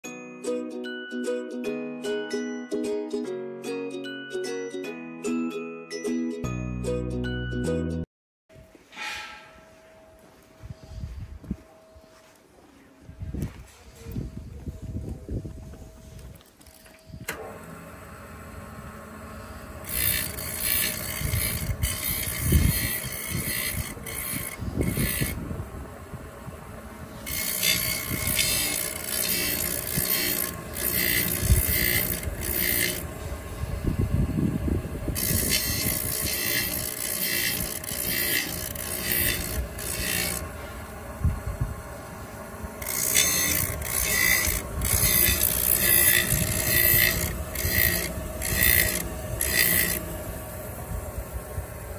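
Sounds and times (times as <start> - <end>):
machine hum: 15.6 - 51.9
blade grinding hiss: 19.8 - 25.4, 27.2 - 33.3, 35.2 - 40.8, 42.8 - 50.5.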